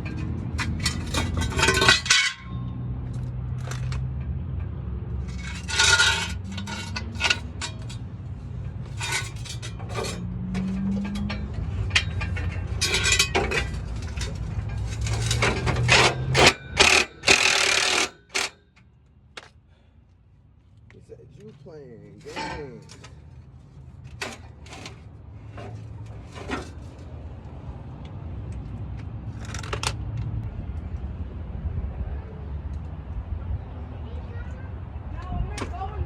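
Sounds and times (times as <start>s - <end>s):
metal tools clinking: 0.0s - 4.3s, 5.2s - 18.6s, 22.1s - 23.4s
metal scraping: 0.0s - 18.6s, 22.0s - 27.4s.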